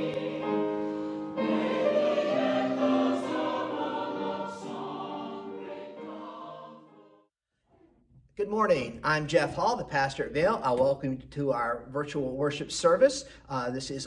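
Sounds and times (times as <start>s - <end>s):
choir singing: 0.0s - 7.3s.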